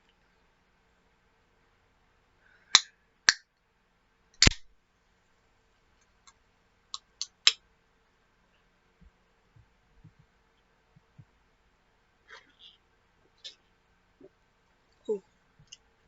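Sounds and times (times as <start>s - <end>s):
sharp short clicks: 4.4s - 4.7s.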